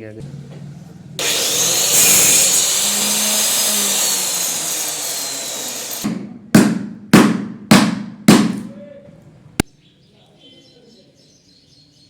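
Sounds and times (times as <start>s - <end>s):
power tool cutting wood: 1.2s - 6.2s
sharp blows: 1.2s - 8.5s.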